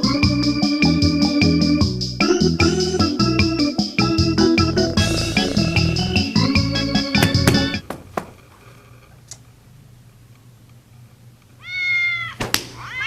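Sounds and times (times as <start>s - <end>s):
organ music: 0.0s - 7.9s
cat meowing: 11.6s - 13.0s.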